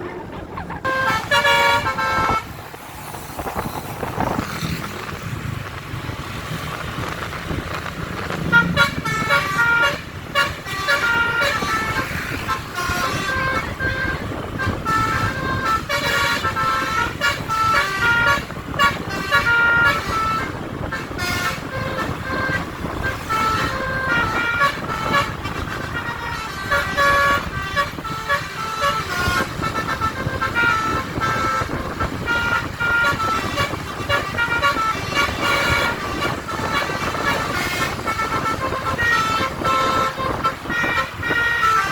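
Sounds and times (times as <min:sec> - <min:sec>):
vehicle rumble: 0:00.0 - 0:41.9
multi-tone horn playing a tune: 0:00.8 - 0:02.5, 0:08.4 - 0:41.9.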